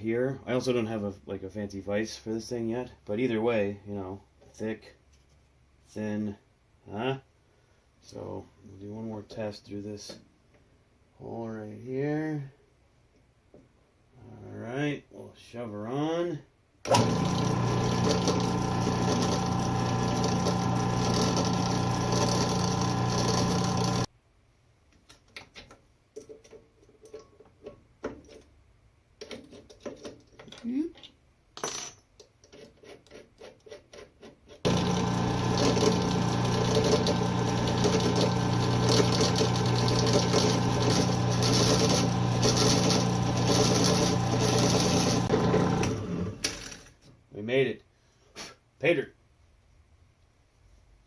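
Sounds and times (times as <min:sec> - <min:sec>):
drill press motor hum: 0:16.9 - 0:24.1, 0:34.6 - 0:46.7.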